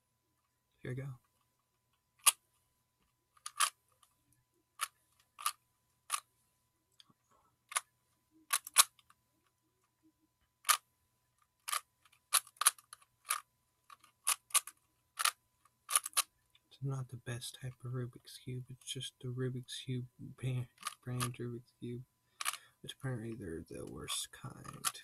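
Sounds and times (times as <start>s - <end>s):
puzzle cube plastic layers clicking: 2.2s - 2.4s, 3.4s - 3.8s, 4.8s - 6.3s, 8.5s - 9.2s, 10.6s - 10.8s, 11.6s - 16.3s, 20.7s - 21.4s, 22.4s - 23.0s, 24.2s - 25.0s.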